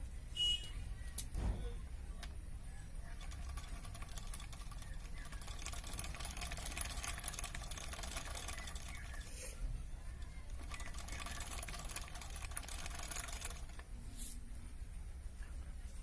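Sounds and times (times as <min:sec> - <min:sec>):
winding machine rattling clicks: 0:03.1 - 0:09.3, 0:10.5 - 0:13.8.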